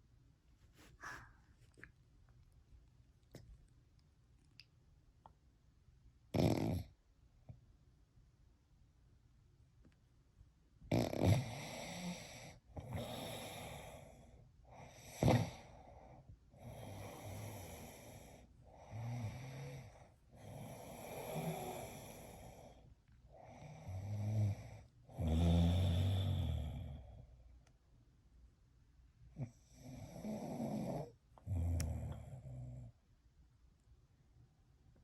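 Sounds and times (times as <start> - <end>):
person snoring: 10.9 - 14.1, 16.6 - 22.8, 23.5 - 27.1.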